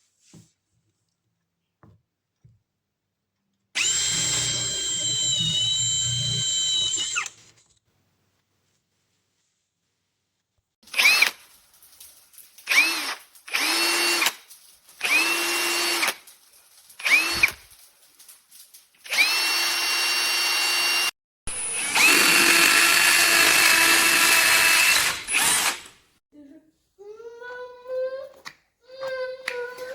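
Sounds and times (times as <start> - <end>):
cordless drill motor whine: 3.8 - 7.3, 12.7 - 14.3, 15.0 - 16.1, 17.0 - 17.5, 19.1 - 25.8.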